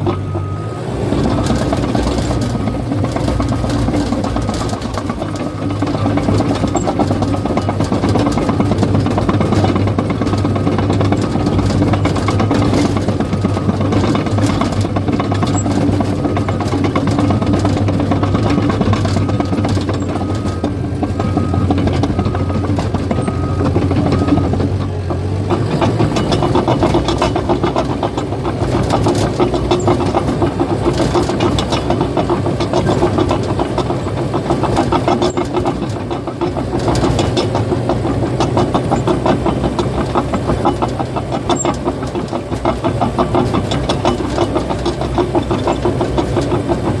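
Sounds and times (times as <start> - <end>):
bulldozer diesel engine running: 0.0 - 47.0
steel tracks clattering and squealing: 0.0 - 47.0.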